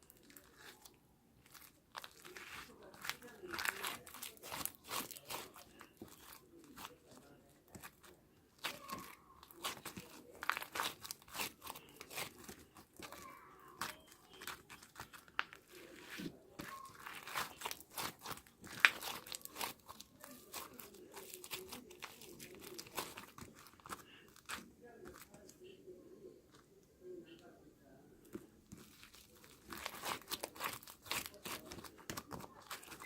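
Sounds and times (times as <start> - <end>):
slime squished by hand: 7.7 - 25.4, 28.7 - 33.0.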